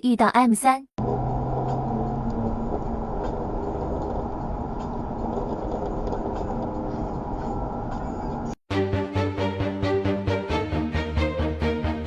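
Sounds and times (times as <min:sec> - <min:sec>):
car engine running steadily: 0:01.0 - 0:08.4
road noise: 0:01.0 - 0:08.6.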